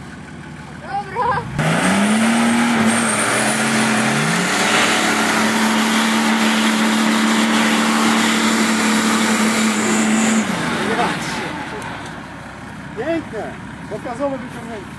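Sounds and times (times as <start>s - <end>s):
engine revving at high revs: 1.5s - 12.2s.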